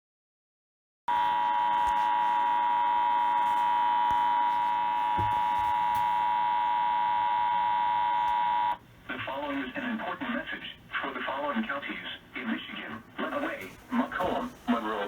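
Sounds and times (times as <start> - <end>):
two-tone alarm: 1.1 - 8.8.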